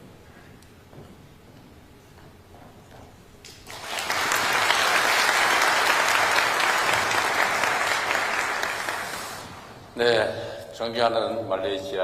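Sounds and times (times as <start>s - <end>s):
audience applauding: 3.5s - 9.8s.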